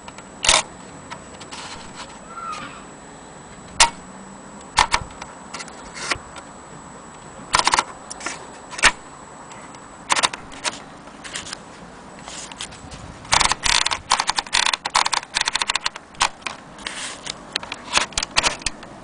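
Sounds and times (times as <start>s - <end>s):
typewriter clacking: 13.3s - 16.5s.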